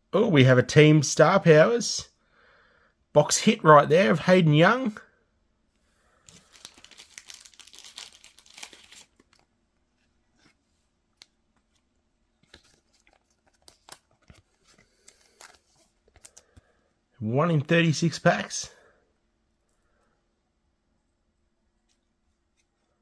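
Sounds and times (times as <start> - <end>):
trading cards rustling and sliding: 6.3 - 16.6.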